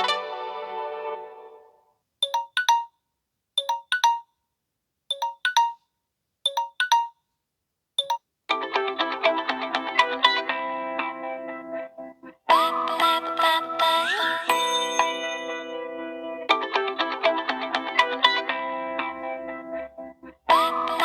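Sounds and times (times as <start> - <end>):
busy melodic ringtone: 2.2 - 2.9, 3.6 - 4.3, 5.1 - 5.8, 6.5 - 7.2, 8.0 - 21.0
melodic ringtone: 2.2 - 2.9, 3.6 - 4.3, 5.1 - 5.8, 6.5 - 7.2, 8.0 - 21.0
paired electronic beeps: 2.2 - 2.9, 3.6 - 4.3, 5.1 - 5.8, 6.5 - 7.2, 8.0 - 8.2.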